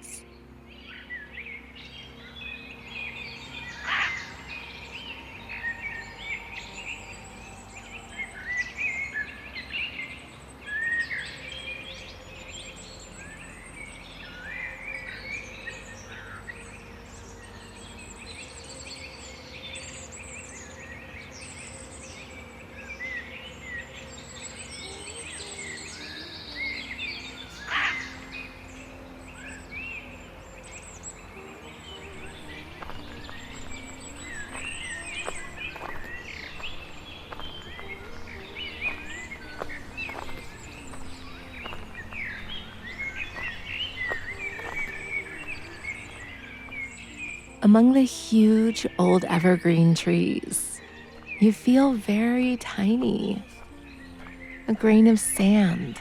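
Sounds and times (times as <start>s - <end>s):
songbirds chirping and trilling: 0.0s - 56.0s
sharp bird calls: 10.7s - 56.0s.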